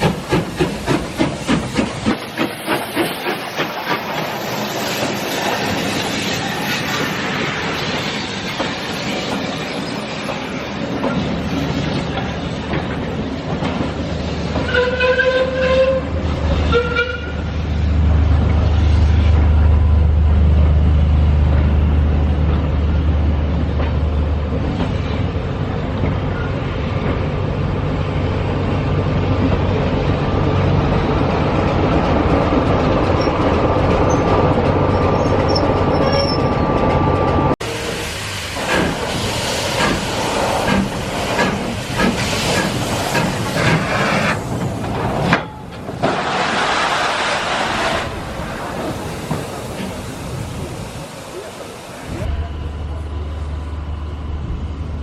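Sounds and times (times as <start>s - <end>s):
low rumble of train running: 0.0s - 55.0s
train horn blasts: 14.6s - 16.1s, 16.7s - 17.4s.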